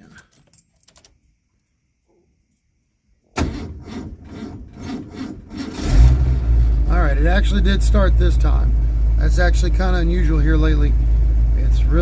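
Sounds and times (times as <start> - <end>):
starter motor cranking engine: 3.4 - 6.4.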